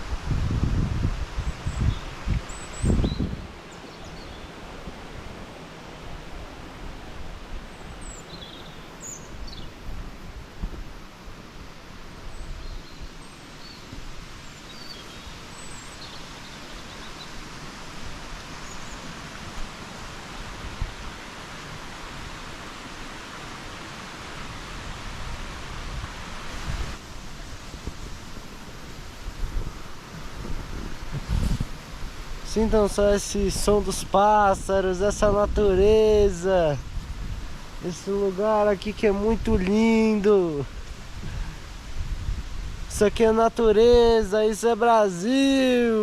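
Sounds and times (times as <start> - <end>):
waterfall rushing: 0.0 - 46.0
birds chirping and whistling: 1.6 - 4.6, 7.8 - 9.8, 12.3 - 17.4.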